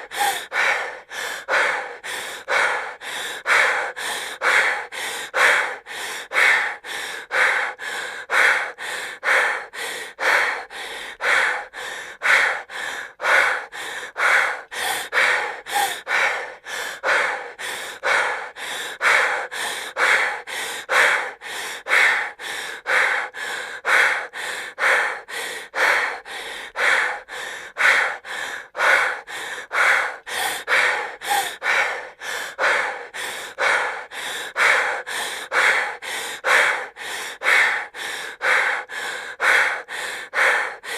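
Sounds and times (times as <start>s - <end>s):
woman breathing heavily: 0.0s - 40.9s.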